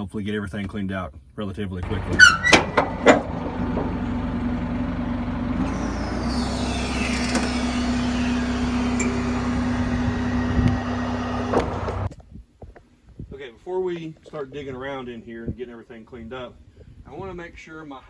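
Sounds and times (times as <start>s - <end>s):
tractor engine humming: 1.8s - 12.1s
faint high sliding tone: 5.7s - 12.1s.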